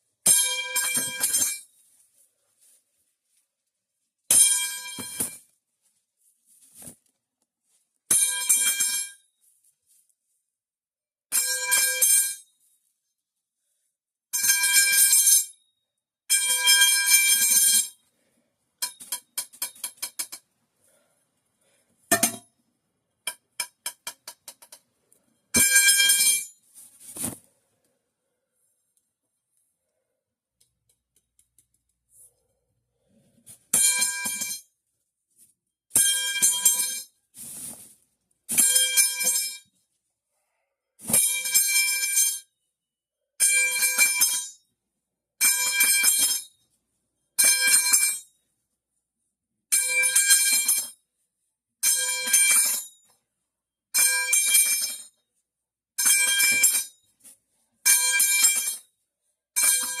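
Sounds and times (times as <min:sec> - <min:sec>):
metal pipe clattering and clanging: 0:00.3 - 0:01.8, 0:18.8 - 0:20.5, 0:22.1 - 0:22.5, 0:23.3 - 0:24.8, 0:25.6 - 0:26.6, 0:33.5 - 0:34.7, 0:35.9 - 0:37.1, 0:38.5 - 0:39.6, 0:51.9 - 0:53.1, 0:57.9 - 0:58.9, 0:59.6 - 1:00.0.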